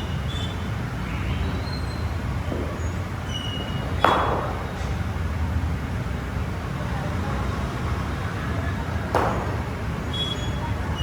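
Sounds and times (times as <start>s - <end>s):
low rumble of road traffic: 0.0s - 11.0s
cricket bat striking ball: 0.4s - 6.3s, 8.9s - 11.0s.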